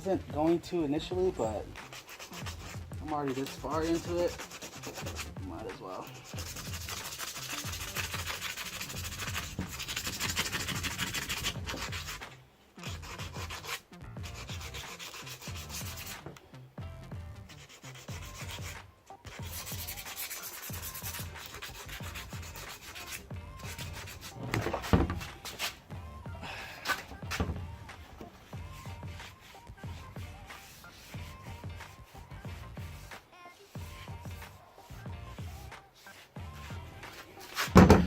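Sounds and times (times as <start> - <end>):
sandpaper rubbing on rusty steel: 0.9 - 16.2, 17.5 - 25.8, 26.8 - 38.0
knock: 37.7 - 38.0.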